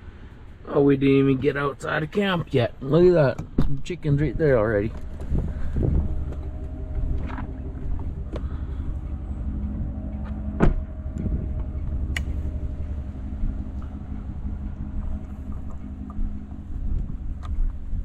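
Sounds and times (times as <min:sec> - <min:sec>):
vehicle engine running: 0:00.0 - 0:18.0
sharp clicks and knocks: 0:10.1 - 0:12.6.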